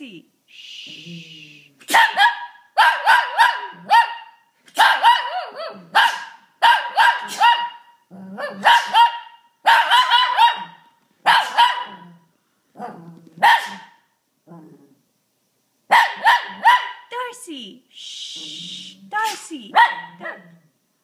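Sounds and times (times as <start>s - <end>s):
small dog barking: 1.8s - 12.2s, 12.8s - 14.1s, 15.9s - 17.1s, 19.2s - 20.6s.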